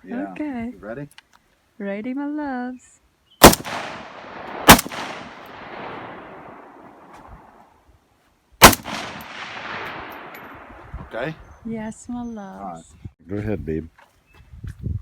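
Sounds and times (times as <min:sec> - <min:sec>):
gunshots with echo: 0:03.4 - 0:07.1, 0:08.6 - 0:10.8.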